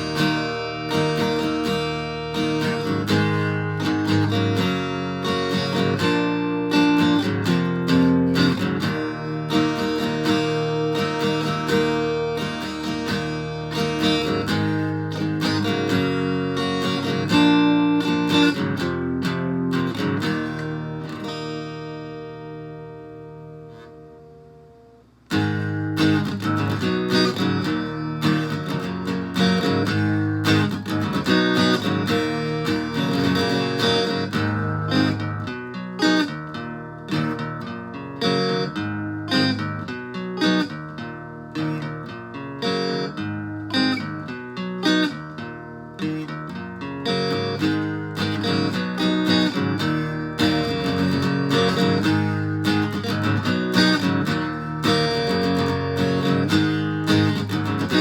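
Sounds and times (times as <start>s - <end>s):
distorted acoustic guitar strumming: 0.0s - 58.0s.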